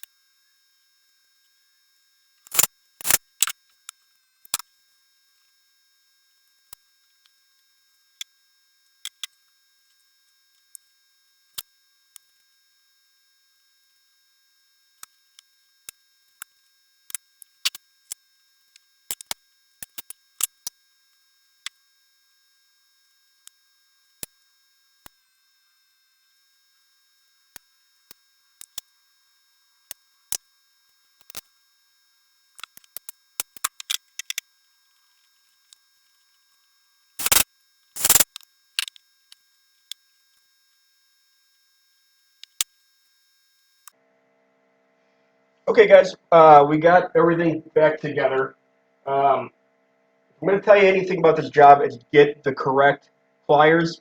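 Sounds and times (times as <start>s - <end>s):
sharp clicks and light taps: 2.5s - 3.2s, 37.2s - 37.4s, 38.0s - 39.0s.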